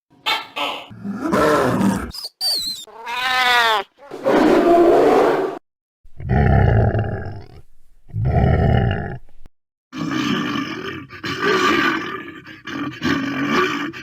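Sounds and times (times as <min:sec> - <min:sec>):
loud rough bear roars: 0:00.9 - 0:02.1, 0:06.2 - 0:09.2.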